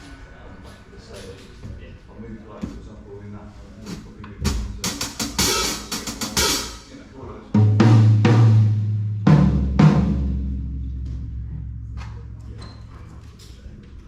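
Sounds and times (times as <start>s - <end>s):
snare drum strokes: 4.5s - 6.8s
cymbal strokes: 5.2s - 6.9s.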